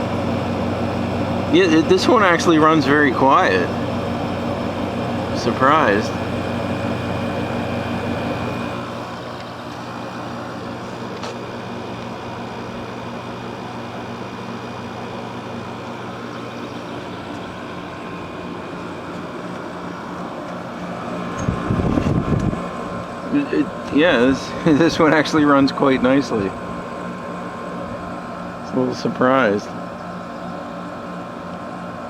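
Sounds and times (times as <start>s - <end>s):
air conditioner humming: 0.0s - 32.0s.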